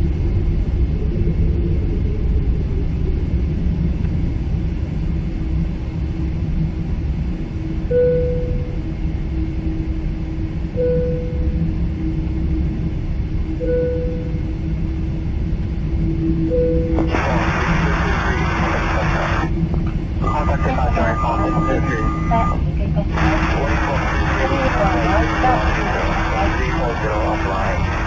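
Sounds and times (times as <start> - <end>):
airplane cabin rumble: 0.0 - 28.0
short tone: 7.9 - 8.8, 10.8 - 11.6, 13.6 - 14.4, 20.2 - 22.6
static-like hiss: 17.0 - 19.5, 23.1 - 28.0.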